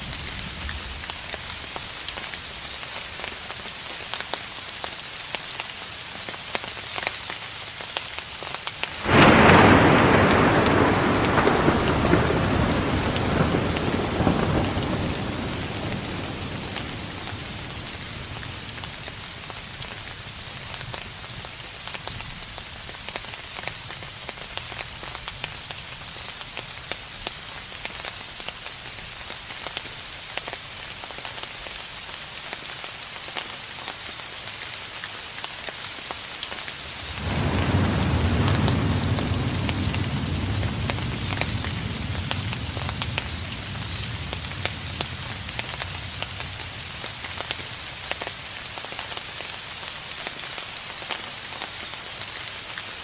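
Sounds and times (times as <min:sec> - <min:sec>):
steady rain falling: 0:00.0 - 0:53.0
distant thunder rumble: 0:09.0 - 0:19.4, 0:37.1 - 0:48.2.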